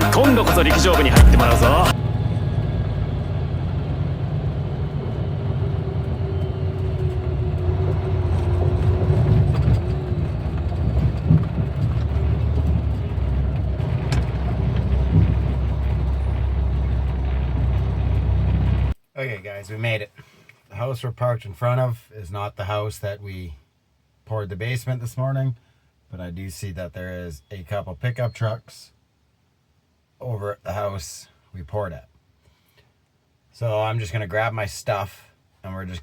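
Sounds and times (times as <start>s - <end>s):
vehicle engine and road noise: 0.0s - 19.0s.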